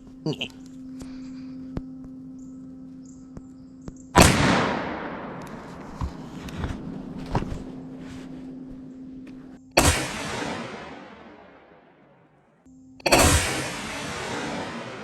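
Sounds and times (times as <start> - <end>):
gunshot echoing: 4.2 - 8.0, 9.8 - 12.2, 13.1 - 15.0.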